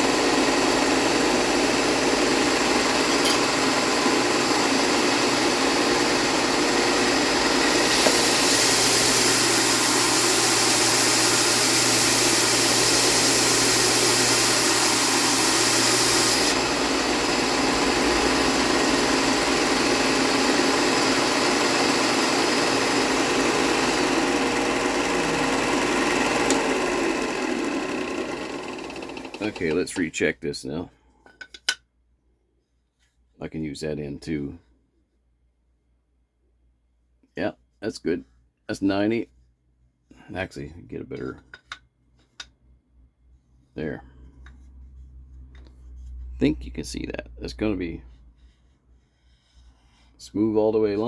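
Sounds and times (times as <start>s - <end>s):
wood grinding on sander: 0.0s - 29.9s
bench sander running: 0.0s - 30.0s.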